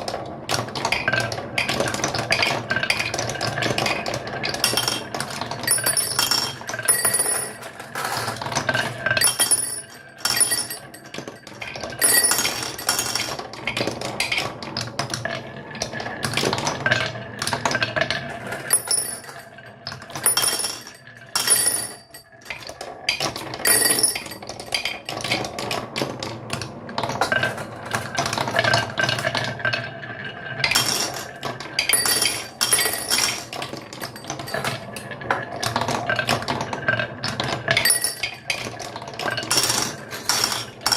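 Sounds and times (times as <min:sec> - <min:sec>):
toy pieces clattering and clinking: 0:03.6 - 0:14.5, 0:17.5 - 0:25.8, 0:27.1 - 0:29.5, 0:30.6 - 0:36.5, 0:37.8 - 0:40.9.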